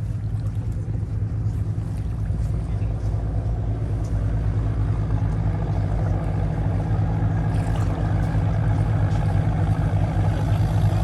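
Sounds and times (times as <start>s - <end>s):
engine droning: 0.0s - 11.0s.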